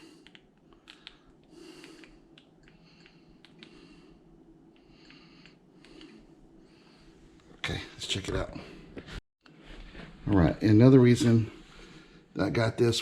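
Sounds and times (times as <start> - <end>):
faint breathing: 0.0 - 7.8, 11.4 - 12.4.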